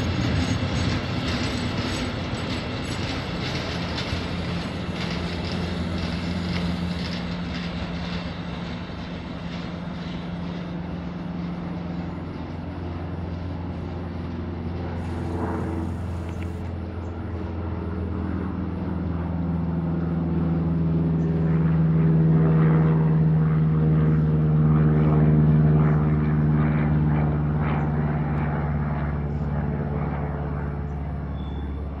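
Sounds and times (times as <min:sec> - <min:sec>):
freight train rumbling: 0:00.0 - 0:16.8
droning hum: 0:00.0 - 0:32.0.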